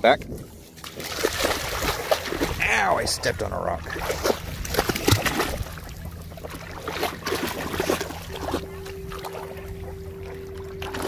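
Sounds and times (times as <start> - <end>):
splashing steps in shallow water: 0.8 - 2.8, 3.8 - 9.6
steady tone: 7.6 - 11.0.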